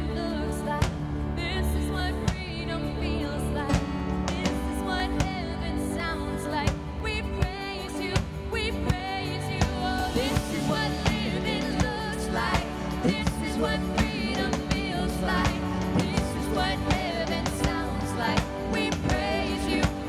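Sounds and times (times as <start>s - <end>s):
song with singing: 0.0s - 20.0s
steady drum beat: 6.7s - 20.0s.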